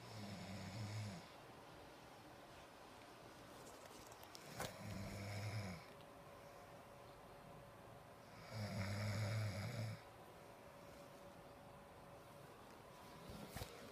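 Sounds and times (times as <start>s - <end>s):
person snoring: 0.0s - 1.3s, 4.5s - 5.9s, 8.3s - 10.0s.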